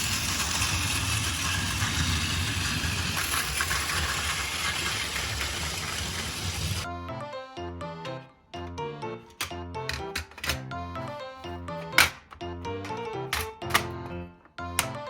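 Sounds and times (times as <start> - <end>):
toy train motor whir: 0.0 - 6.9
wheels clicking on track: 0.0 - 6.9.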